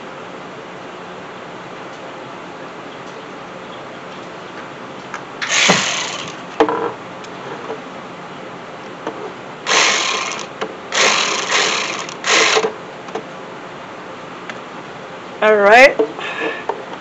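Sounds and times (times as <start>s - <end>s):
ratchet buzzing: 5.4s - 6.4s, 9.7s - 12.7s.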